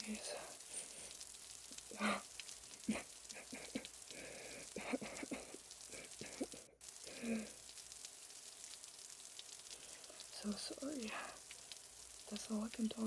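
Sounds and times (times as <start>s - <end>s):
rain hiss: 0.0s - 13.0s
person sobbing: 1.8s - 7.6s.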